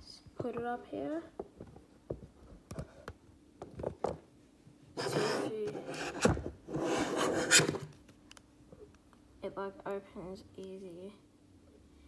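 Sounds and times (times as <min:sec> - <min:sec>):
metal sliding and rubbing: 0:05.0 - 0:07.9.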